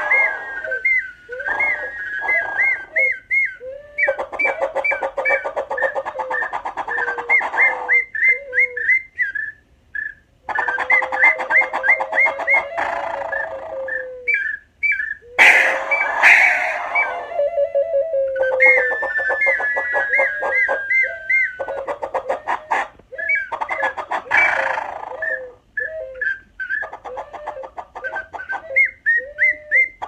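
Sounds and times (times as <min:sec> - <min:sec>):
clay whistles imitating birdcalls: 0:00.0 - 0:30.0.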